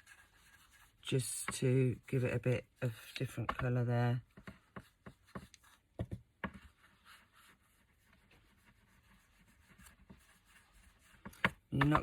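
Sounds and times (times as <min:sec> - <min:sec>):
brush scratching on board: 0:00.0 - 0:12.0
brush tapping on board: 0:03.3 - 0:12.0.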